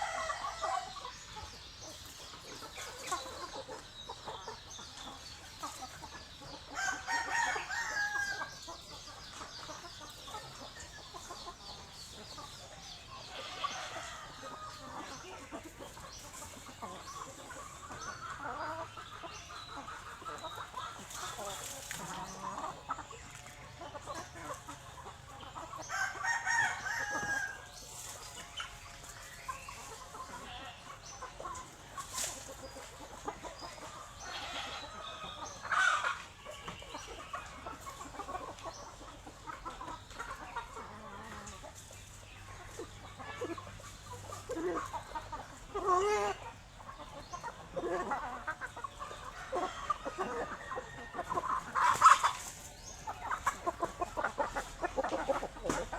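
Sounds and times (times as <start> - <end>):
chickens clucking: 0.0 - 55.9
rooster crowing: 6.8 - 8.4.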